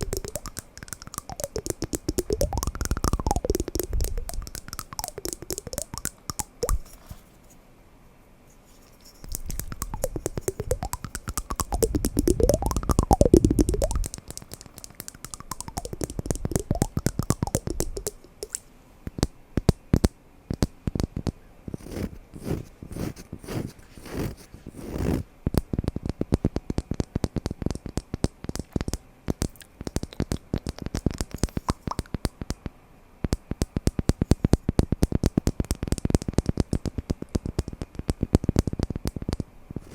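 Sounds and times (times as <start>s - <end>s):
quick sharp wooden taps: 0.0s - 7.0s, 9.2s - 32.6s.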